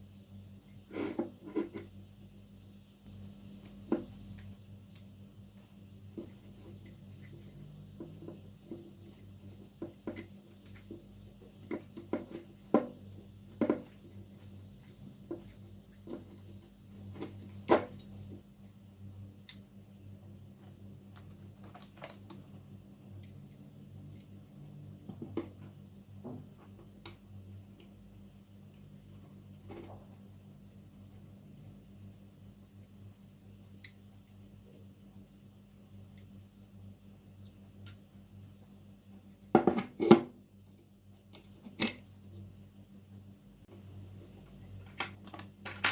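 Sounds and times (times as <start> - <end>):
steady low hum: 0.0 - 21.5
plastic parts clicking and knocking: 44.8 - 45.9.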